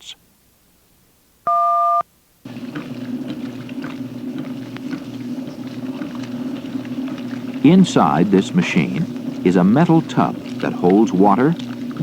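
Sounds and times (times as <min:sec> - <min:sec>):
two-tone beep: 0:01.5 - 0:02.0
washing machine humming: 0:02.4 - 0:12.0.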